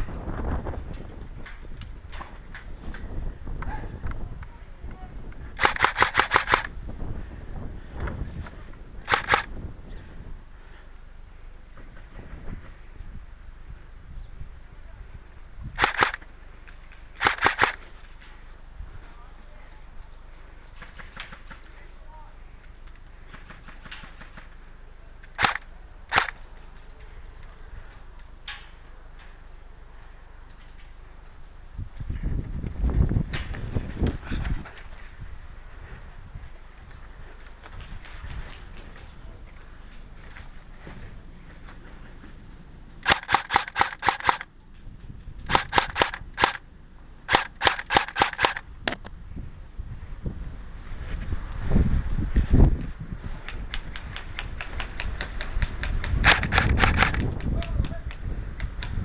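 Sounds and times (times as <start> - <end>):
airsoft gun shots: 5.6 - 6.7, 9.1 - 9.5, 15.8 - 16.2, 17.2 - 17.9, 25.4 - 26.4, 43.0 - 44.5, 45.5 - 46.6, 47.3 - 49.0, 56.2 - 57.3.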